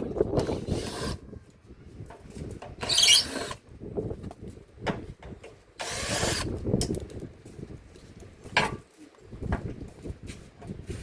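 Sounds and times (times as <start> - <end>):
mechanical tool noise: 2.8 - 3.6.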